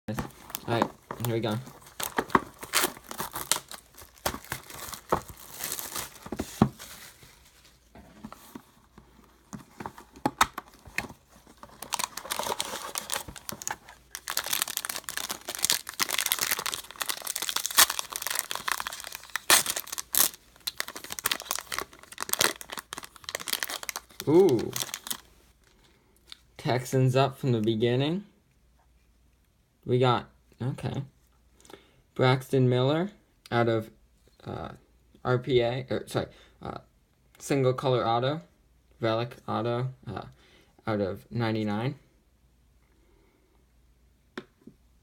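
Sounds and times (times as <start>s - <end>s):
plastic wrapping crinkling and tearing: 0.1s - 7.7s, 9.9s - 25.3s.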